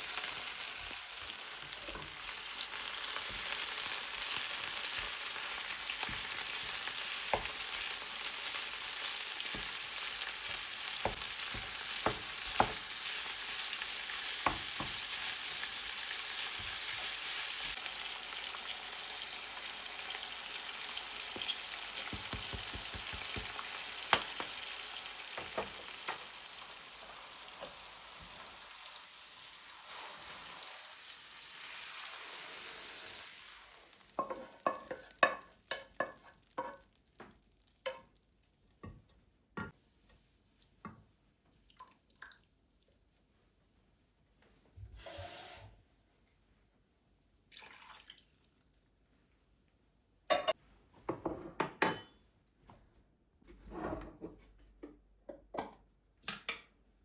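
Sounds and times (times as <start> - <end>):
food sizzling in a frying pan: 0.0 - 39.2, 45.0 - 45.8.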